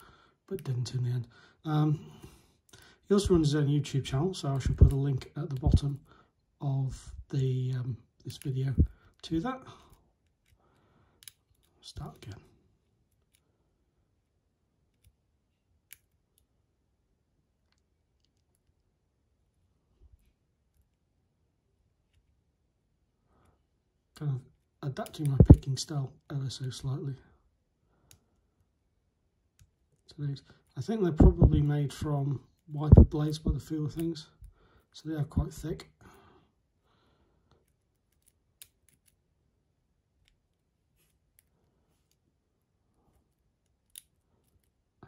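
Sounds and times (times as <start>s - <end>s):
lockpick clicking in padlock: 37.6s - 39.2s.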